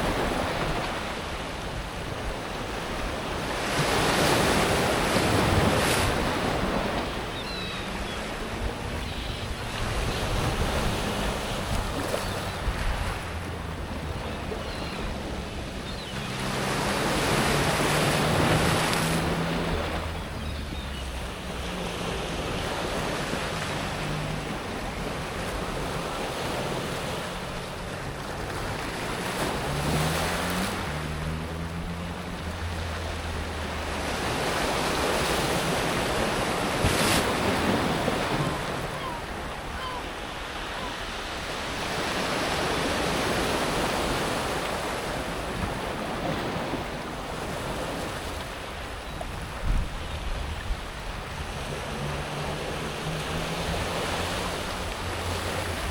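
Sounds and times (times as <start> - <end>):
waves washing over pebbles: 21.3 - 39.7.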